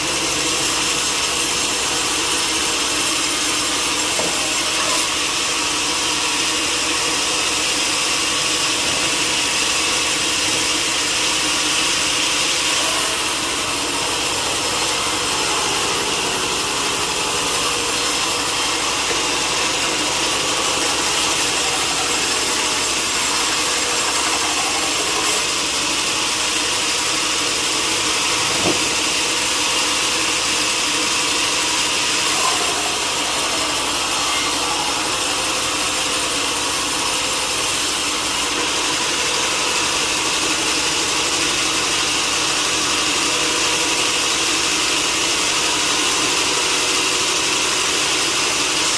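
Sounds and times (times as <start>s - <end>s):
sawmill saw cutting log: 0.0s - 48.9s
low machine hum: 8.6s - 38.0s.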